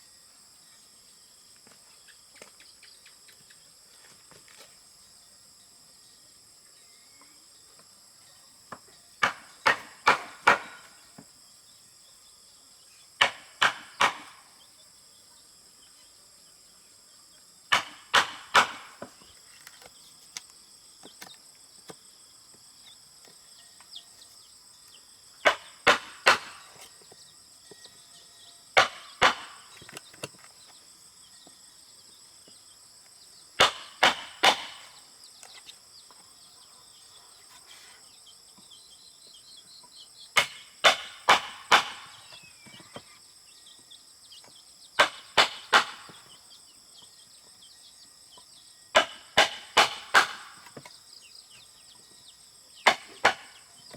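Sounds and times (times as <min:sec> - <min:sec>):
insects droning: 0:00.0 - 0:53.9
hammer striking wood: 0:09.2 - 0:10.9, 0:13.2 - 0:14.4, 0:17.7 - 0:19.2, 0:25.4 - 0:26.8, 0:28.8 - 0:29.8, 0:33.6 - 0:34.9, 0:40.4 - 0:42.2, 0:45.0 - 0:46.2, 0:49.0 - 0:50.9, 0:52.8 - 0:53.6.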